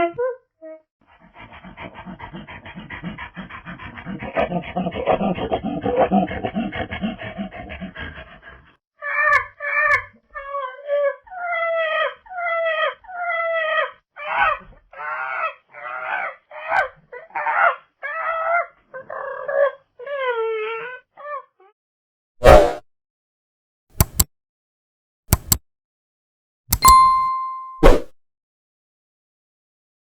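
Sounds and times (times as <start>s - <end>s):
monkey grunting: 1.2s - 8.8s.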